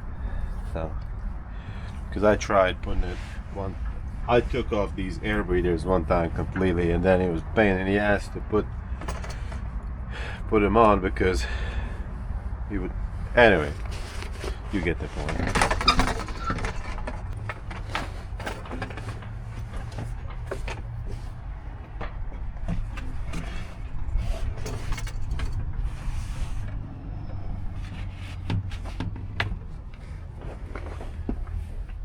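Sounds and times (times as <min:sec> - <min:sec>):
clicks and knocks of engine parts: 0:06.3 - 0:11.0, 0:13.0 - 0:32.0.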